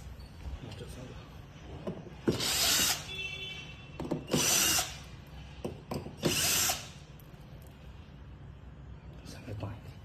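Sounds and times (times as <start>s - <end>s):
power drill running: 2.3s - 3.1s, 4.3s - 5.0s, 6.2s - 7.0s.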